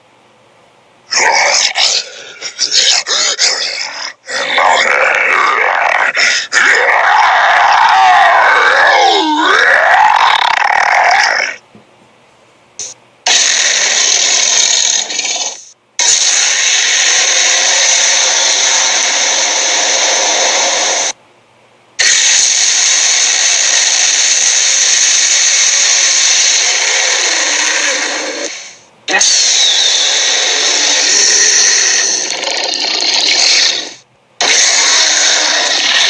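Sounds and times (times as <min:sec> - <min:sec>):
wavering vocal groan: 0:01.1 - 0:11.6
steady machine-like whirring: 0:12.8 - 0:21.2, 0:22.0 - 0:36.0.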